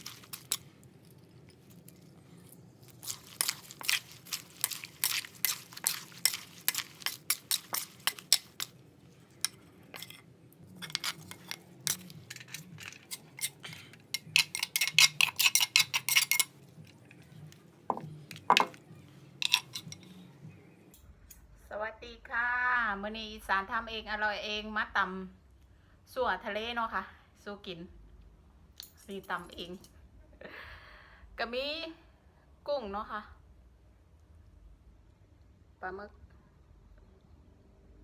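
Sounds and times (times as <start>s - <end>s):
dishes and utensils clinking: 9.4s - 17.0s, 17.9s - 18.8s, 19.4s - 20.2s.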